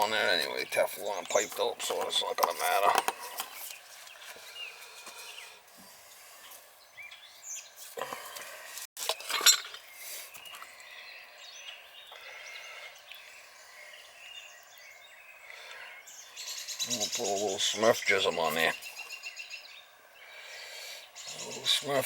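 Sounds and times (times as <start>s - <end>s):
faint birds chirping: 0.0s - 22.0s
metal plumbing parts clinking: 9.0s - 9.8s.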